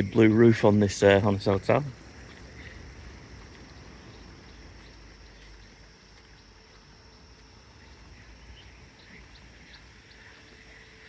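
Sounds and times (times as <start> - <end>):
faint hiss and low rumble: 0.0 - 11.0.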